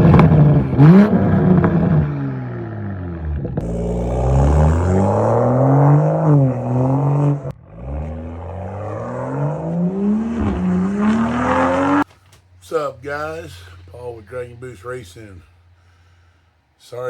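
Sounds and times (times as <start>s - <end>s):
car engine accelerating through gears: 0.0s - 12.0s.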